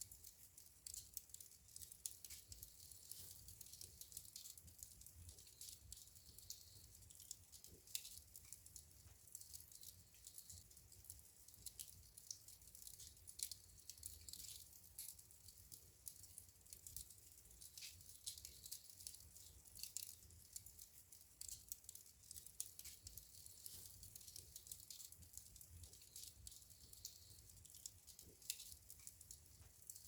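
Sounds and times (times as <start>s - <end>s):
wood fire crackling: 0.0s - 30.0s.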